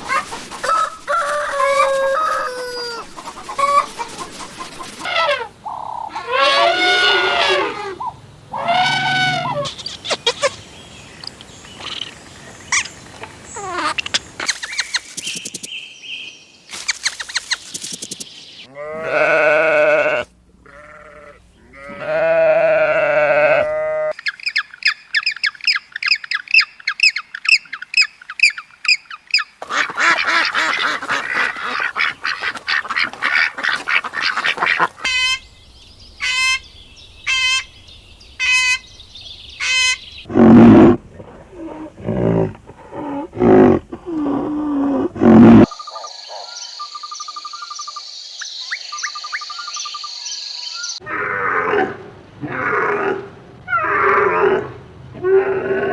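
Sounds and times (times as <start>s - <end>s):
loud lower animal calls: 0.0s - 10.5s, 18.7s - 24.3s
bleat-like animal call: 6.1s - 8.0s, 18.7s - 24.2s
falling chirps: 13.6s - 15.9s
rapid high bird chirping: 14.4s - 18.7s.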